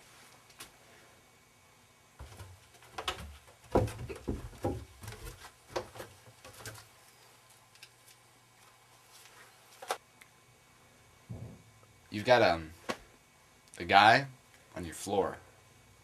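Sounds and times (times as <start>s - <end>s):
faint low hum: 0.0s - 16.0s
irregular knocks and thumps: 2.2s - 6.7s, 11.3s - 11.7s.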